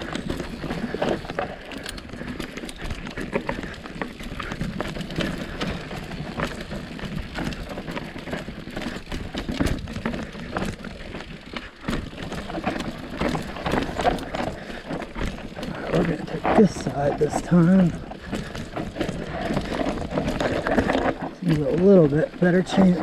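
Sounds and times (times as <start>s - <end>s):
bike knocks and rattles: 0.0s - 23.0s
bike tyres rolling over rock: 0.0s - 23.0s.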